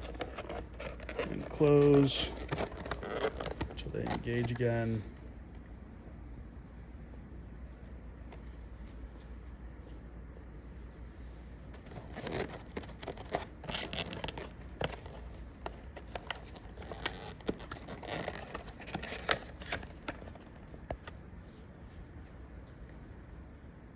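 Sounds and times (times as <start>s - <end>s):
packaging rustling and scraping: 0.0s - 5.2s, 11.6s - 21.9s.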